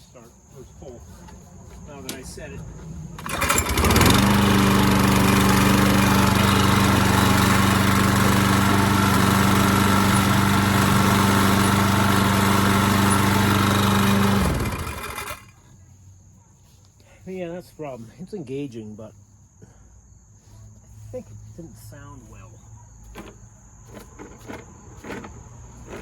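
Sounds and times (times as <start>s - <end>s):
lawn mower engine running: 1.6s - 15.6s, 23.9s - 26.0s.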